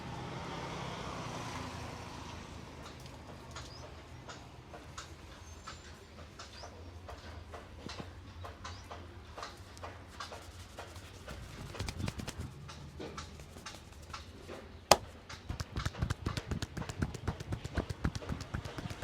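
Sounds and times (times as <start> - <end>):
hands tapping a head: 14.9 - 19.0
sharp crack: 14.9 - 19.0.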